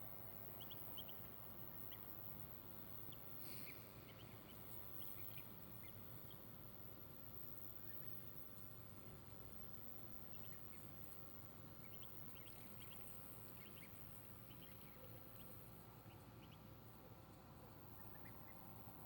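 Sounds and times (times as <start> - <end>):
duckling peeping: 0.6 - 1.2, 3.0 - 6.4, 10.2 - 10.8, 11.8 - 16.7, 17.8 - 18.7.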